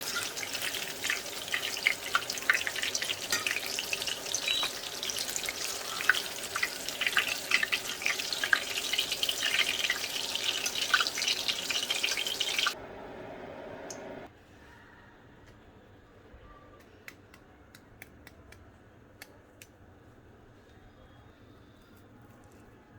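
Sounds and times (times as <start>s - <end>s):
food deep-frying in oil: 0.0s - 12.8s.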